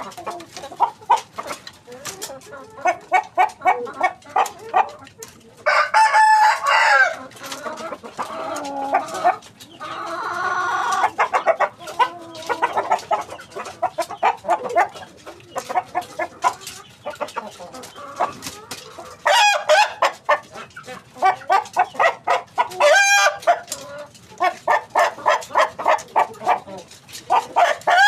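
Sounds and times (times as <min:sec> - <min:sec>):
chickens clucking: 0:00.0 - 0:28.0
rooster crowing: 0:05.7 - 0:07.2.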